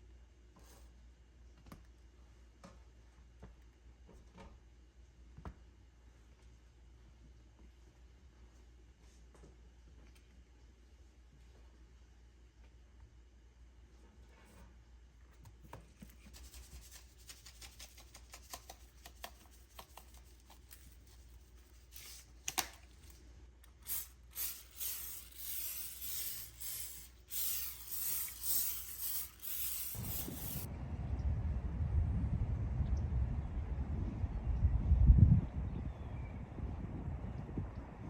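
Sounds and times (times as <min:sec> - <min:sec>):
clicks and taps from handling objects: 0:17.4 - 0:21.0
rubbing or scrubbing strokes: 0:23.8 - 0:30.7
low rumble: 0:30.2 - 0:38.0.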